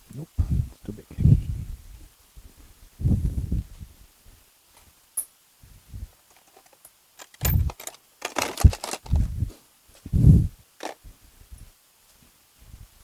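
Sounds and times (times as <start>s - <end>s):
metal tools clinking: 6.3s - 9.2s, 10.8s - 11.0s.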